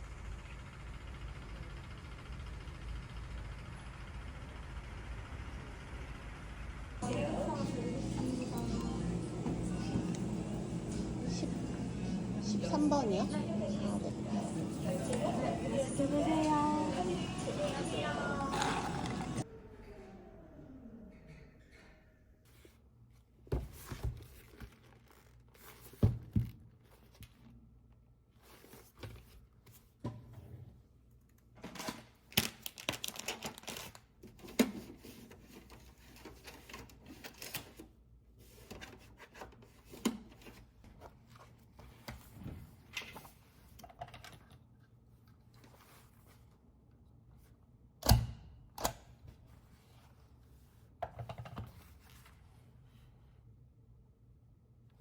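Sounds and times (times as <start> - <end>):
rustling tearing sound: 32.3 - 34.2.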